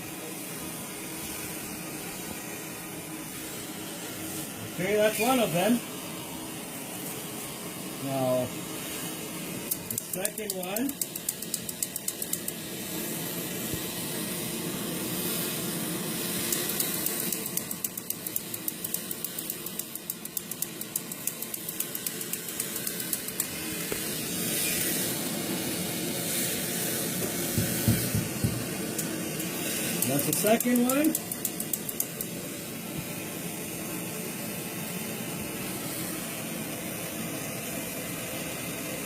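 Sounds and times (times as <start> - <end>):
torch flame hissing: 0.0 - 39.0
fast crackling: 29.9 - 32.2.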